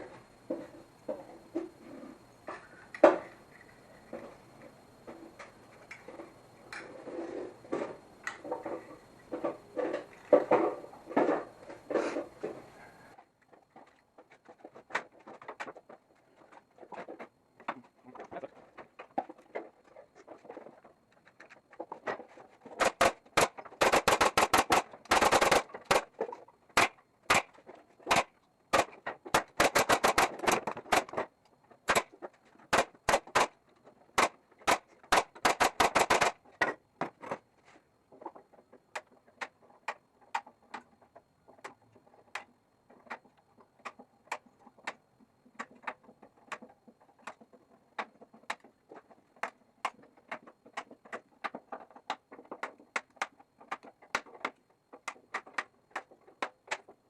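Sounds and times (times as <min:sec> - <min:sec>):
faint clicks and taps: 0:38.1 - 0:57.0.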